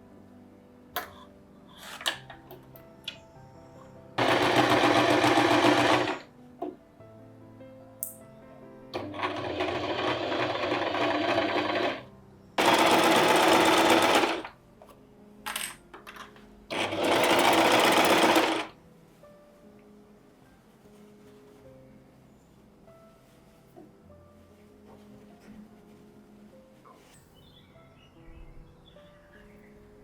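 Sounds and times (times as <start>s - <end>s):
small electric motor rattling: 4.2s - 6.2s, 12.6s - 14.5s, 16.7s - 18.7s.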